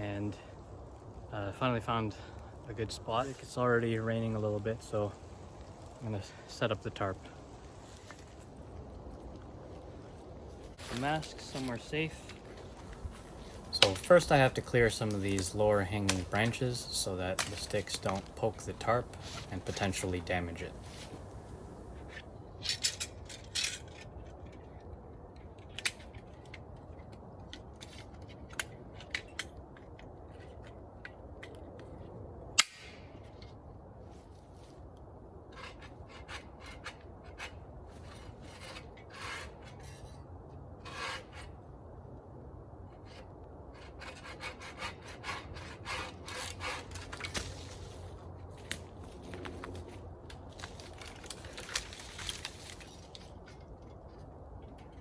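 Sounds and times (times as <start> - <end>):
branch cracking loudly: 12.9 - 22.1
twigs snapping and crackling: 12.9 - 22.2, 48.6 - 53.3.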